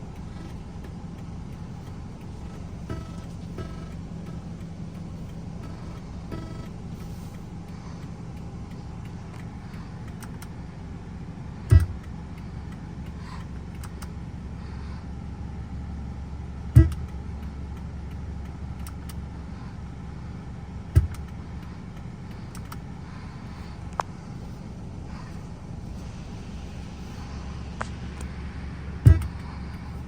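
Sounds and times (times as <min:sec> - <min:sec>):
low electrical hum: 0:00.0 - 0:30.0
static clicks and pops: 0:00.1 - 0:07.4
speaker thumps: 0:11.7 - 0:12.0, 0:20.9 - 0:21.3, 0:29.0 - 0:29.5.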